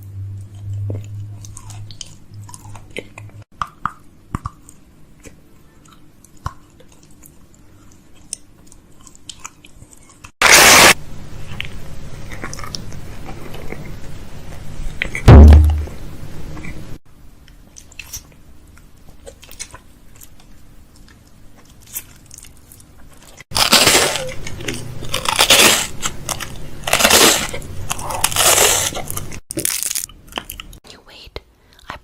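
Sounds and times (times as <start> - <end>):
heavy thump: 15.3 - 16.0.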